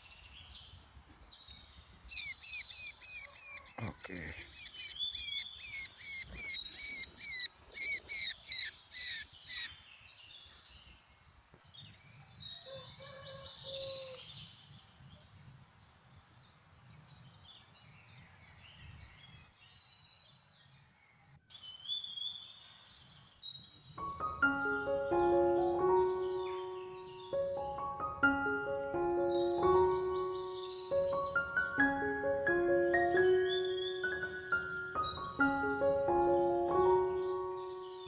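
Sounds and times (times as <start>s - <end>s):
faint bird chirps: 1.5s - 11.2s
bird calling fast: 2.1s - 9.8s.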